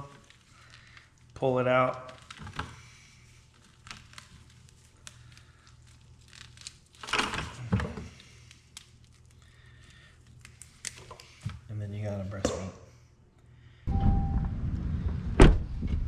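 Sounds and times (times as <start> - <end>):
meat tearing and rustling: 0.0 - 11.5.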